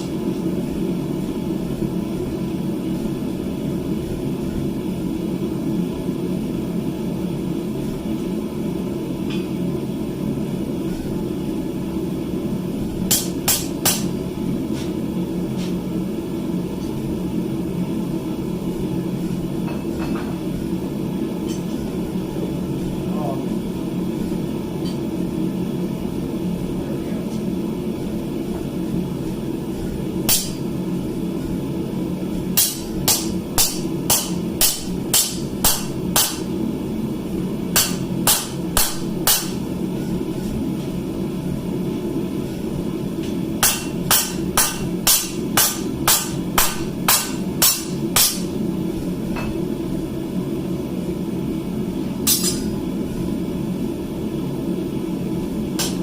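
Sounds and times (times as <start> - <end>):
steady low hum: 0.0 - 56.0
hammer striking steel on anvil: 13.1 - 14.2, 30.3 - 30.6, 32.6 - 36.5, 37.7 - 39.6, 43.2 - 48.6, 52.2 - 52.8, 55.8 - 56.0.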